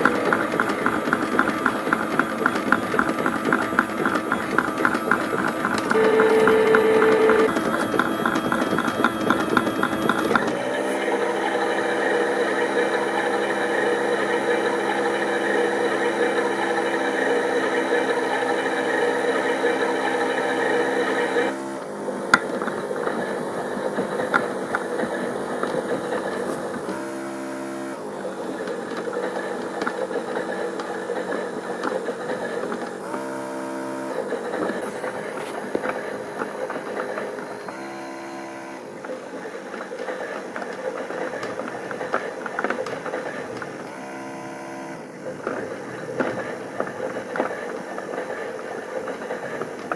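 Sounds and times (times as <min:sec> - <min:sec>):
toy washing machine ticking: 0:00.0 - 0:21.5, 0:39.0 - 0:43.9
electric motor whir: 0:00.1 - 0:49.9.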